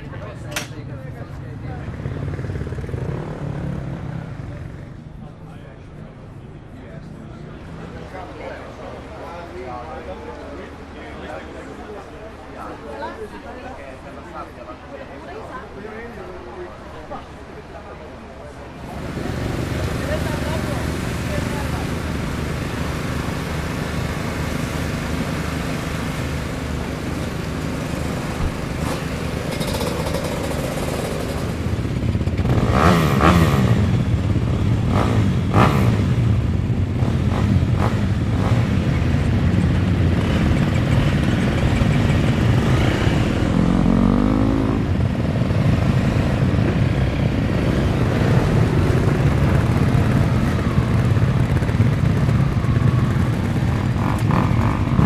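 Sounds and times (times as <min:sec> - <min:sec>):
motocross engines droning: 0:00.0 - 0:55.0
engines revving: 0:18.8 - 0:55.0
sharp clatters: 0:28.8 - 0:31.6.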